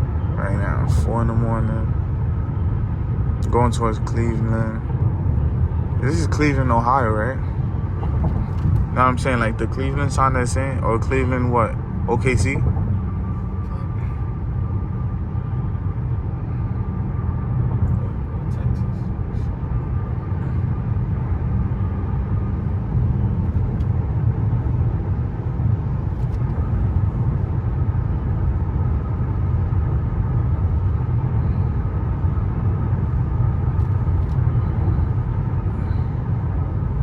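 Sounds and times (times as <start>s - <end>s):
car engine drone: 0.0s - 37.0s
road and tyre rumble: 0.0s - 37.0s.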